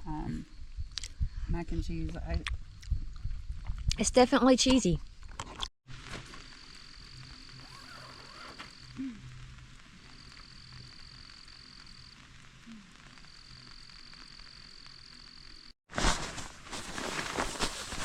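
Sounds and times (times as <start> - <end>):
insect trilling: 6.4 - 15.7
loud rustling: 15.9 - 18.0.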